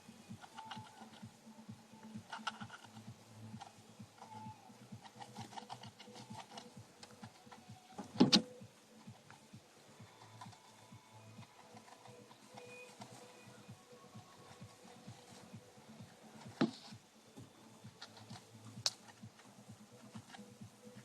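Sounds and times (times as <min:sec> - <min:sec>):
hamster crunching food: 0:00.4 - 0:01.2, 0:02.0 - 0:08.3, 0:09.1 - 0:16.9.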